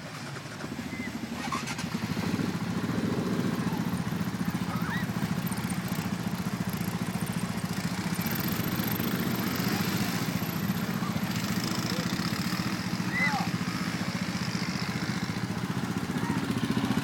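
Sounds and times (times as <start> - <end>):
atv engine puttering: 0.0 - 17.0.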